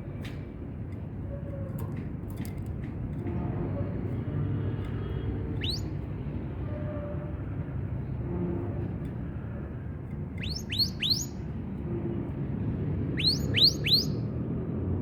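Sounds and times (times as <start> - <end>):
canary whistled calls: 5.6 - 6.0, 10.4 - 11.4, 13.1 - 14.3.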